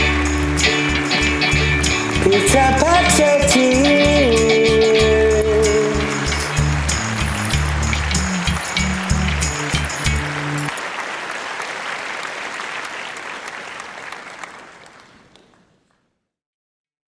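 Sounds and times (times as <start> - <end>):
bass and percussion notes: 0.0 - 10.7.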